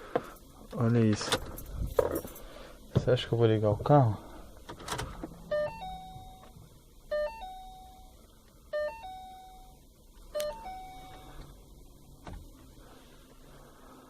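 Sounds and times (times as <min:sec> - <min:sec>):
car dashboard warning chime: 0:05.4 - 0:11.4.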